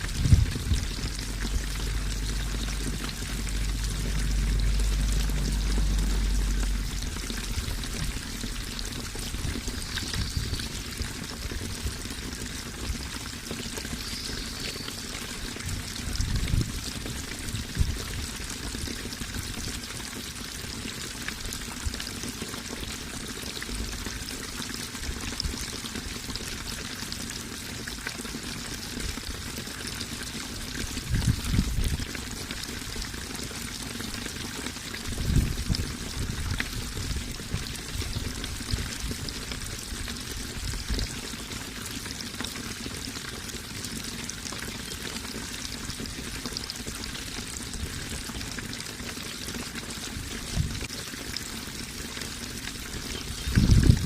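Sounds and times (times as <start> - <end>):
brief low rumbles: 0.0 - 10.3
water flowing and splashing: 0.0 - 54.0.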